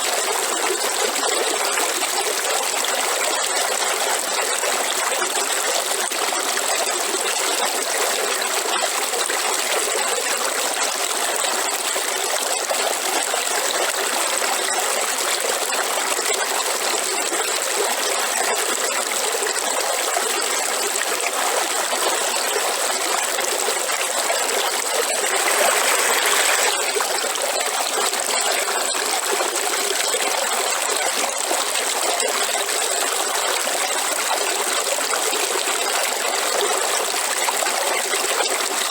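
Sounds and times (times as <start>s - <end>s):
river water flowing over rocks: 0.0s - 38.9s.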